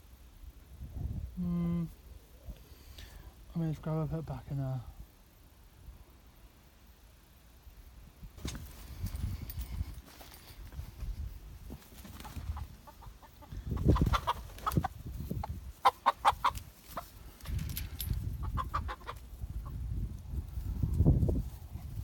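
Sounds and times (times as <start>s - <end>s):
chickens clucking: 11.7s - 20.1s.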